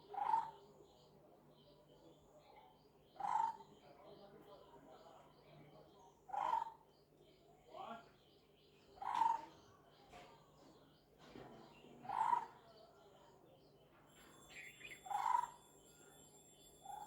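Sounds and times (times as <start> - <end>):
faint high bird chirps: 14.1 - 17.0.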